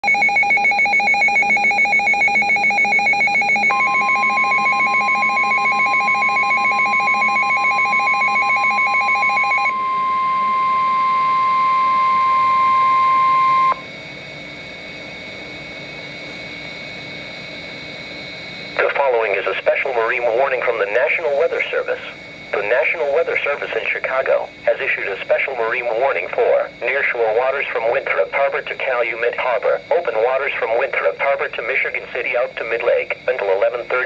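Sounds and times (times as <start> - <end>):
radio alarm beeping rapidly: 0.0 - 13.8, 18.7 - 34.0
steady warning alarm tone: 0.0 - 34.0
faint steady radio background: 18.8 - 34.0.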